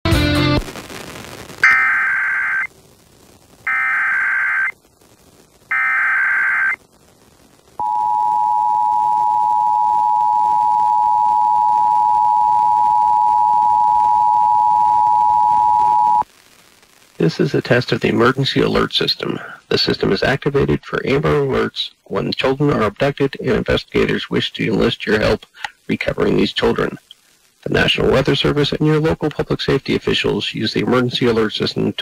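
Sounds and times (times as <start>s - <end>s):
digital data tone bursts: 1.6s - 2.7s, 3.7s - 4.8s, 5.7s - 6.8s
two-tone attention signal: 1.6s - 2.7s.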